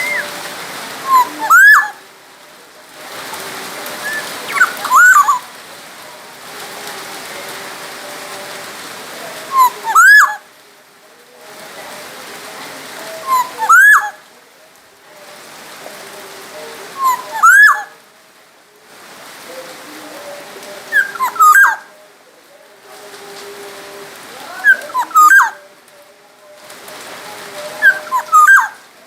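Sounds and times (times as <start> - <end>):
bird fluty whistled calls: 0.0 - 0.3, 1.0 - 2.0, 4.0 - 5.4, 9.5 - 10.4, 13.2 - 14.2, 17.0 - 17.9, 20.9 - 21.8, 24.6 - 25.6, 27.8 - 28.8
steady hiss: 0.0 - 29.0.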